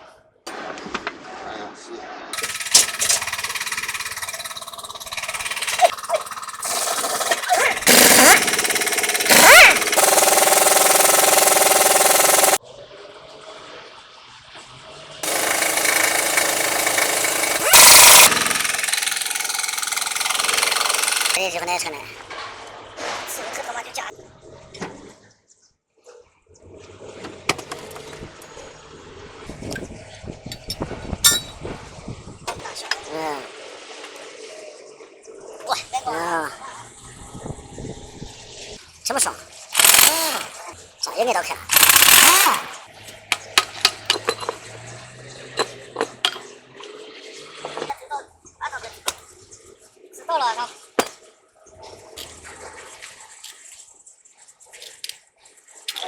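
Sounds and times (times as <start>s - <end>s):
engine knocks: 2.4s - 12.6s, 15.2s - 21.4s
metallic clinks and knocks: 43.1s - 46.5s.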